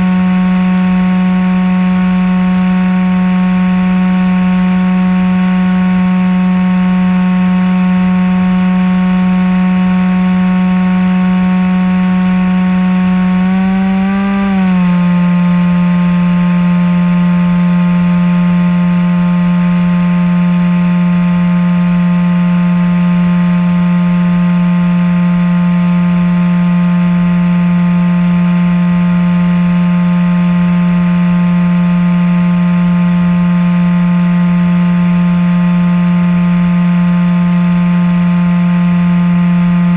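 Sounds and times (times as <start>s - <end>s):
model aircraft motor drone: 9.9s - 15.8s.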